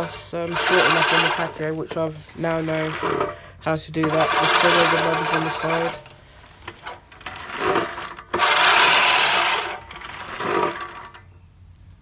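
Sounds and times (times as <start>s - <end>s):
push mower reel blades whirring: 0.0s - 11.3s.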